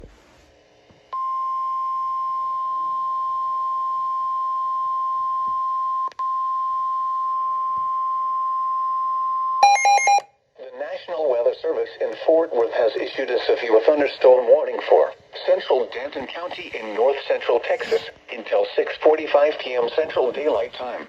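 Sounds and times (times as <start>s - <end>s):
steady high alarm tone: 9.6s - 10.2s.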